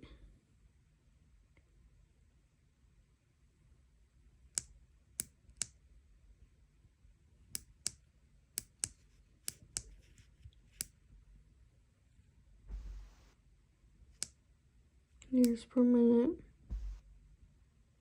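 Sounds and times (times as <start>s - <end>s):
device buttons clicking: 15.4s - 15.6s, 16.7s - 17.0s.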